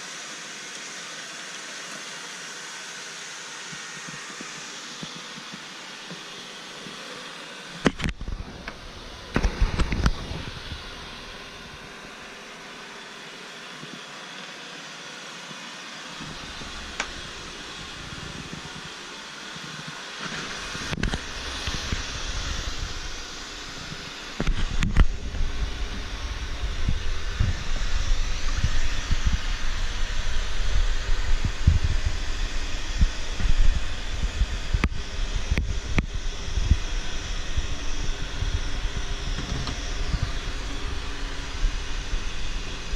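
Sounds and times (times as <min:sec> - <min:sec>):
robot vacuum whirring: 0:00.0 - 0:42.9
deep rumble: 0:20.6 - 0:42.9.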